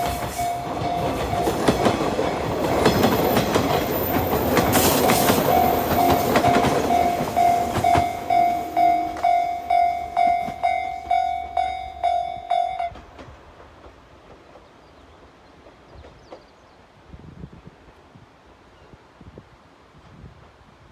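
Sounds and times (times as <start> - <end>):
level-crossing alarm dinging: 0.0 - 13.0
train running past: 0.0 - 16.6
faint wind: 0.0 - 20.9.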